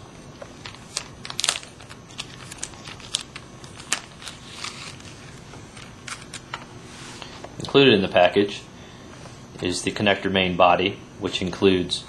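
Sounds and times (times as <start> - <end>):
plastic bag crinkling: 0.6 - 6.5.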